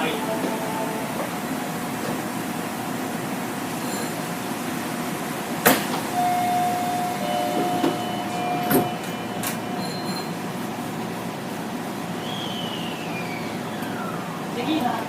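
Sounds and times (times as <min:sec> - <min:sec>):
door warning tone: 0:00.0 - 0:01.4, 0:06.1 - 0:10.7
train car hum: 0:00.0 - 0:15.0
train doors sliding shut: 0:05.4 - 0:11.3
door knocks closing: 0:07.5 - 0:09.0.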